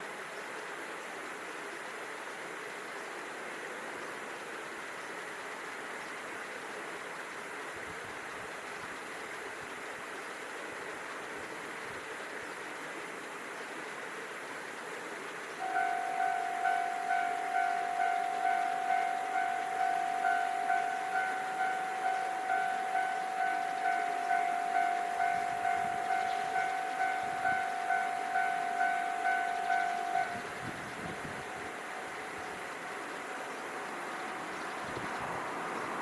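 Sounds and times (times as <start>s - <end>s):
steady background noise: 0.0s - 36.0s
level-crossing warning bell: 15.6s - 36.0s.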